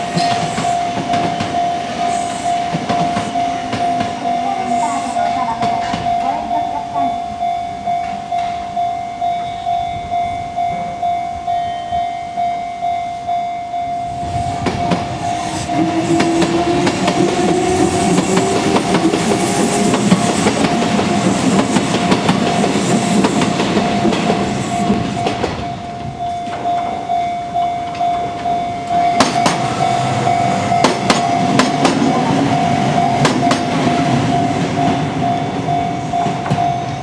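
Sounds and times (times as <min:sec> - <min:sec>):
train wheels clattering: 0:00.0 - 0:06.6, 0:14.6 - 0:37.0
electric train whine: 0:00.0 - 0:37.0
level crossing bell ringing: 0:00.0 - 0:37.0.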